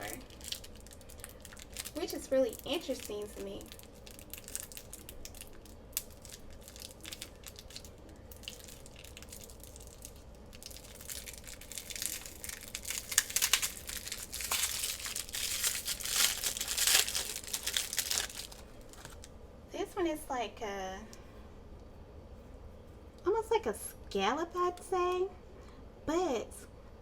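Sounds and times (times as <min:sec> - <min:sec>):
packaging crinkling and rustling: 0:00.0 - 0:19.3.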